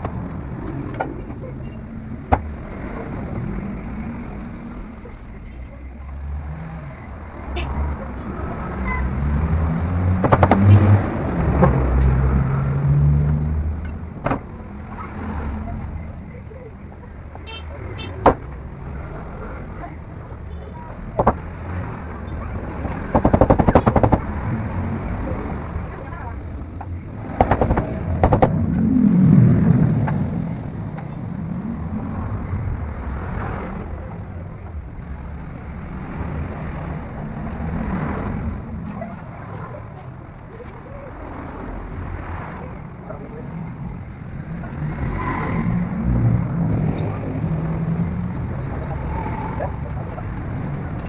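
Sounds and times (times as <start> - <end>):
sharp knocks: 10.1 - 11.0, 21.2 - 21.5, 22.8 - 24.3, 27.2 - 28.6.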